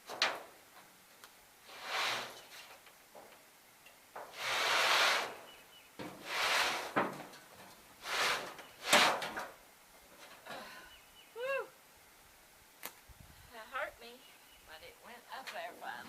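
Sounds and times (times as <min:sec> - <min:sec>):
roofing scraping on roof: 0:01.6 - 0:03.3, 0:04.2 - 0:09.6.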